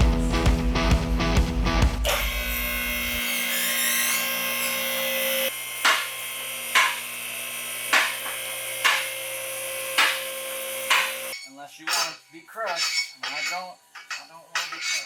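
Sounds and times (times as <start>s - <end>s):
sharp metal clacks: 10.9s - 15.0s.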